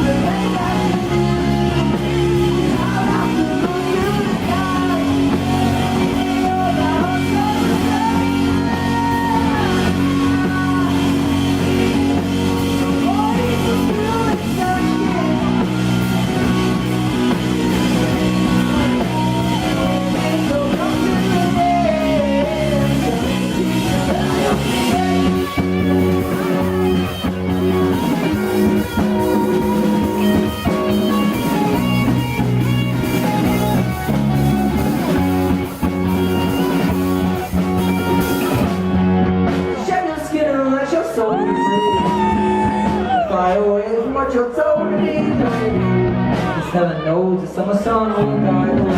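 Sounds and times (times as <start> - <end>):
drum kit: 0.0 - 40.3, 41.4 - 43.5, 44.8 - 47.0
electric guitar: 0.0 - 48.9.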